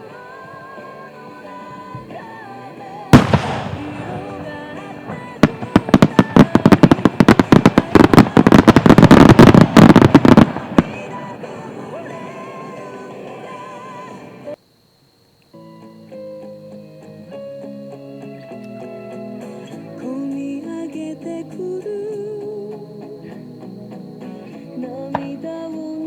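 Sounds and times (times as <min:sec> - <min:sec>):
background music: 0:00.0 - 0:14.6, 0:15.6 - 0:26.0
firework crackles: 0:00.0 - 0:14.6, 0:18.9 - 0:26.0
firework booms and bangs: 0:03.1 - 0:14.4.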